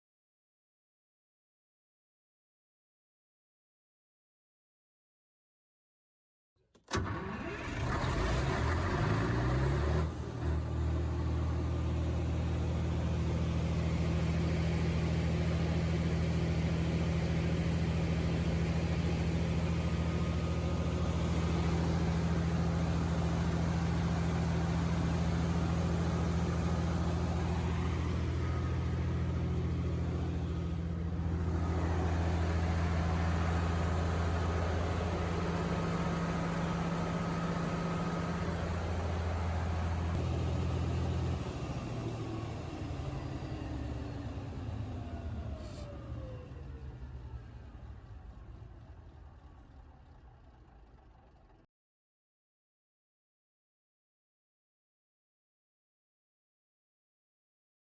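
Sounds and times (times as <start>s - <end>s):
diesel generator engine running: 6.9s - 51.7s.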